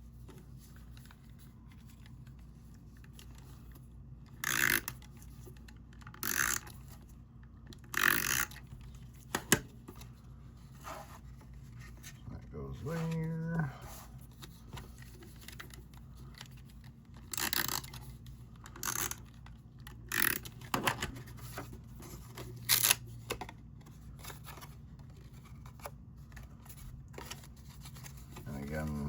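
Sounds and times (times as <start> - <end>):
low room hum: 0.0 - 29.0
paper rustling and scraping: 8.7 - 18.6, 21.0 - 29.0.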